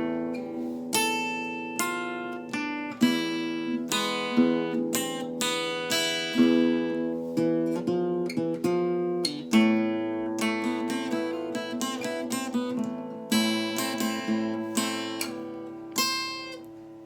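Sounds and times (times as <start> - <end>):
solo acoustic guitar: 0.0 - 17.0.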